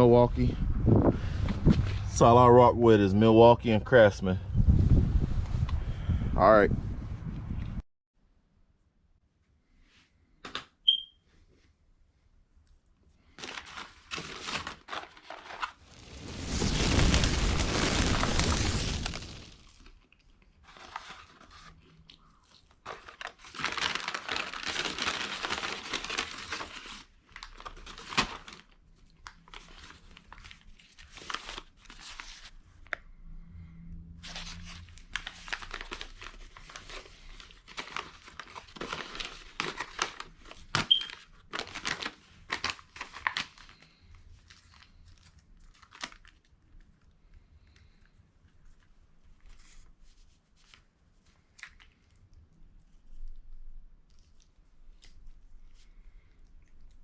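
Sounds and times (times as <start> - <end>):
crinkling and rustling: 13.6 - 19.8
rushing noise: 15.9 - 19.7.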